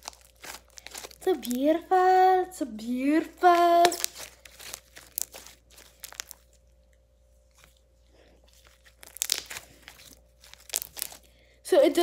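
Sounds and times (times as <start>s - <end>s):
slime crackling pops: 3.4s - 6.4s, 8.9s - 11.2s.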